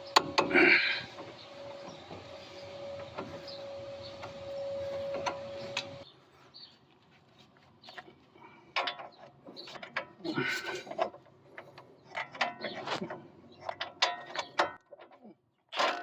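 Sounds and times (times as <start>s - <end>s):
small electric motor whirring: 0.0s - 6.0s.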